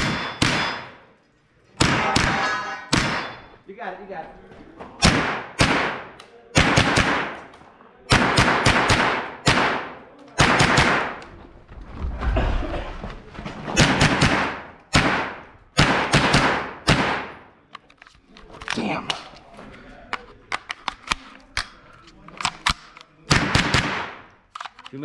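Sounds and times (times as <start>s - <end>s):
rifle shots with echo: 0.0s - 1.0s, 1.8s - 3.5s, 5.0s - 7.5s, 8.1s - 11.3s, 13.8s - 17.5s, 22.6s - 24.4s.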